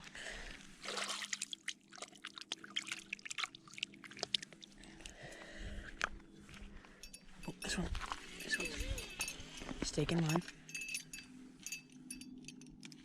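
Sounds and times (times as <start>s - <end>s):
water splashing and trickling: 0.7s - 5.4s.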